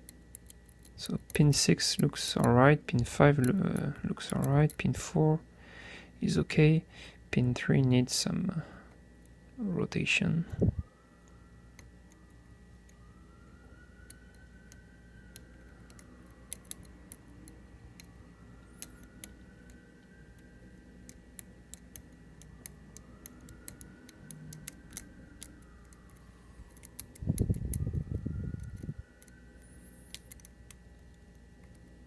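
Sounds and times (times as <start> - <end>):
lock pick clicking on pins: 0.0 - 4.8, 14.0 - 18.1, 21.0 - 27.8, 28.6 - 29.3, 30.1 - 31.8
low rumble: 27.1 - 29.0.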